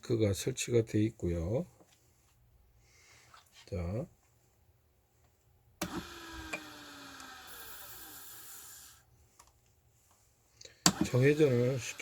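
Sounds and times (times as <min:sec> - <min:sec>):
grinding machine motor whirring: 0:05.8 - 0:09.0, 0:10.9 - 0:12.0.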